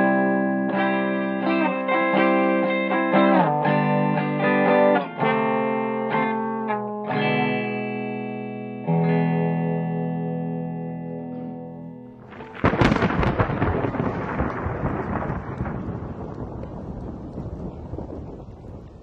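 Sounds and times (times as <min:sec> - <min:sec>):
electric guitar strumming chords: 0:00.0 - 0:14.5.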